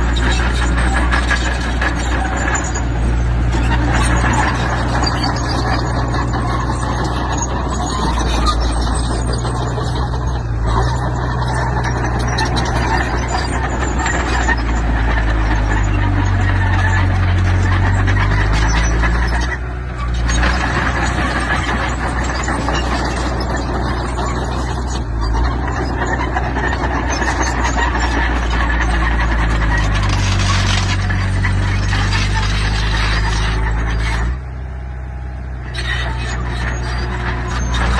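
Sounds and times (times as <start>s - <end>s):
dense metallic rattle: 0.0s - 34.6s
diesel engine drone: 0.0s - 37.9s.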